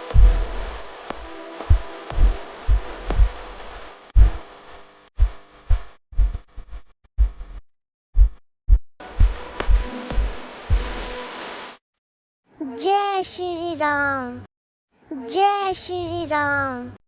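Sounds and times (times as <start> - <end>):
bass-heavy electronic music: 0.0 - 4.5, 9.0 - 11.2.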